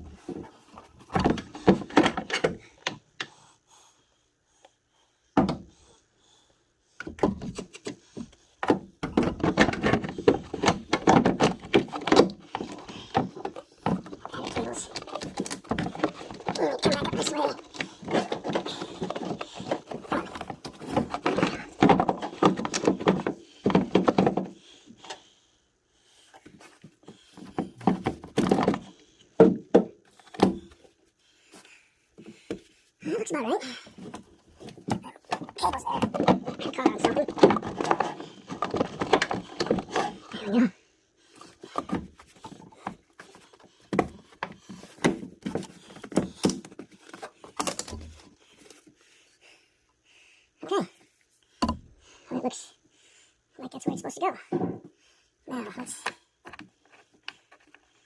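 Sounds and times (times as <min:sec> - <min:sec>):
plastic parts knocking and clicking: 0:00.0 - 0:03.3, 0:07.0 - 0:25.2, 0:26.4 - 0:30.9, 0:33.9 - 0:40.4, 0:41.3 - 0:48.9, 0:51.6 - 0:51.9.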